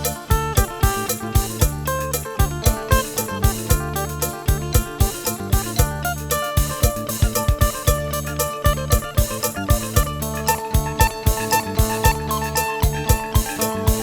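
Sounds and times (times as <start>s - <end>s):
held bass line: 0.0s - 14.0s
quick drum beat: 0.0s - 14.0s
melody: 5.8s - 14.0s.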